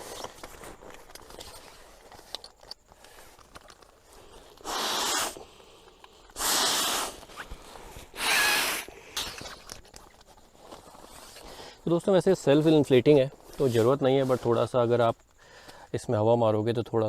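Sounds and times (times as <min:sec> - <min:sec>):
breaths blown into a valve: 0:06.4 - 0:07.2.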